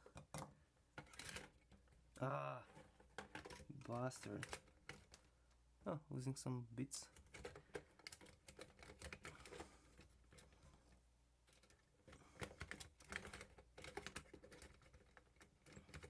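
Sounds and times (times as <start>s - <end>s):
clicks and taps of small parts: 11.5s - 16.0s.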